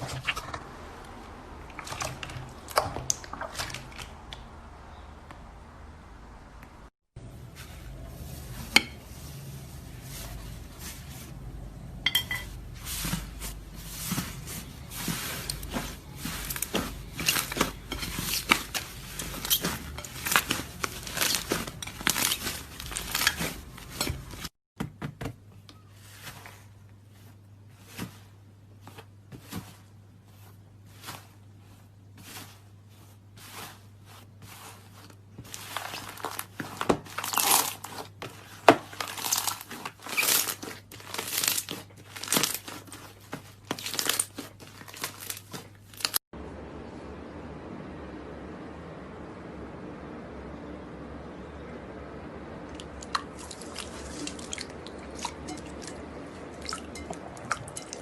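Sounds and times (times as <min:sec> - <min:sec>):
low steady hum: 0:00.0 - 0:24.5, 0:40.7 - 0:58.0.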